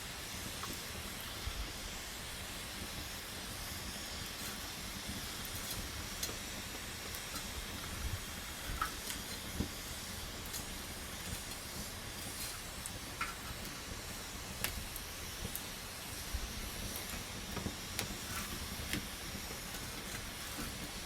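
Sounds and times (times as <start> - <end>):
campfire crackling and hissing: 0.0 - 21.0.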